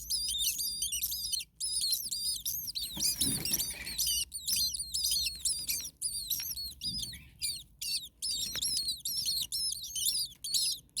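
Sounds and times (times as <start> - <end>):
nestlings calling: 0.0 - 11.0.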